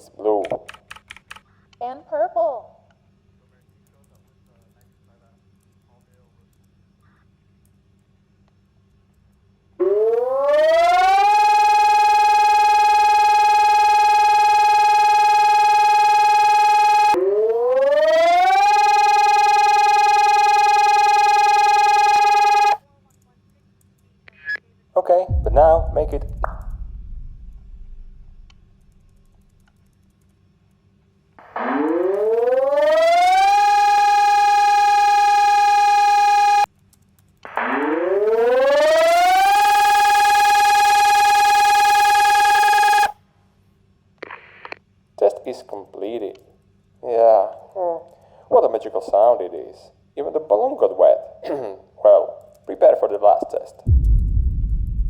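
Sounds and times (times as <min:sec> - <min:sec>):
electronic warning siren: 0:09.8 - 0:22.8, 0:25.3 - 0:29.4, 0:31.5 - 0:36.7, 0:37.6 - 0:43.2, 0:53.9 - 0:55.0.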